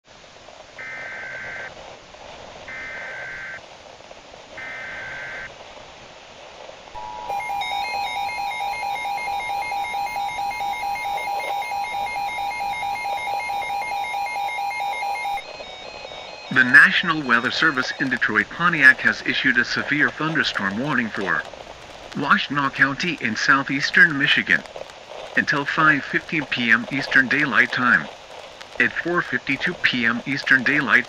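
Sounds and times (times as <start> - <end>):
steady hiss: 0.1 - 31.0
steady two-tone attention signal: 7.0 - 18.4
screeching digital header bursts: 7.0 - 20.5.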